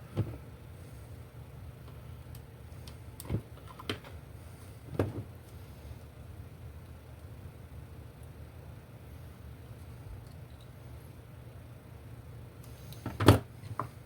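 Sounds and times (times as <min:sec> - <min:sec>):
steady low hum: 0:00.0 - 0:14.0.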